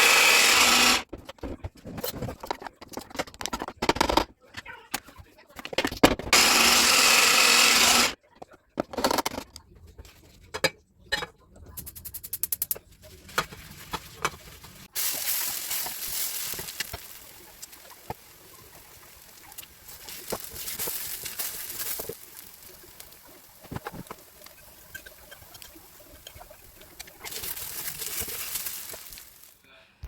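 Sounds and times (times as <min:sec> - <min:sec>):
batter frying in hot pan: 0:13.2 - 0:29.6.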